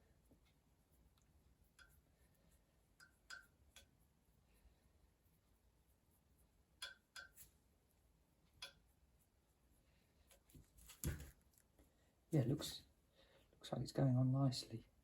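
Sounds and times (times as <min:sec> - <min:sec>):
paintbrush clicks and taps on metal: 0:01.6 - 0:02.0, 0:02.9 - 0:04.0, 0:06.7 - 0:07.6, 0:08.4 - 0:08.9.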